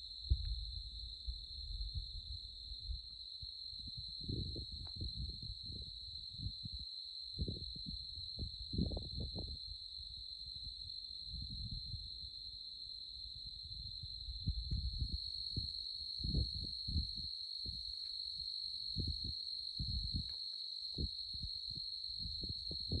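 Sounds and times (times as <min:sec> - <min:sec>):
crickets trilling: 0:00.0 - 0:23.0
low rumbles and thumps: 0:00.3 - 0:03.0.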